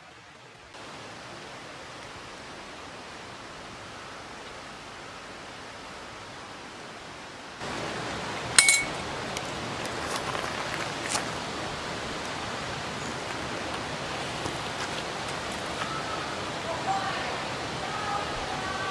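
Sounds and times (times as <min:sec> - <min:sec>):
sharp metallic clink: 0:08.6 - 0:09.0.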